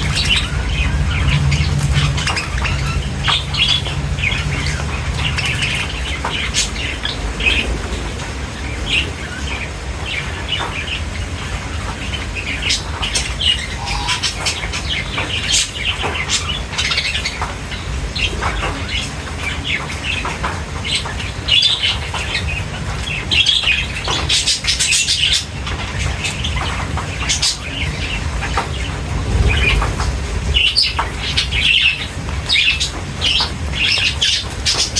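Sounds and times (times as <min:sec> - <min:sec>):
steady low hum: 0:28.7 - 0:31.8.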